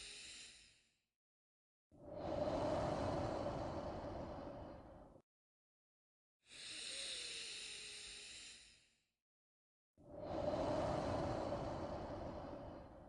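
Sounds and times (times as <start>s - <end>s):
person breathing deeply: 2.0s - 5.2s, 10.1s - 13.0s.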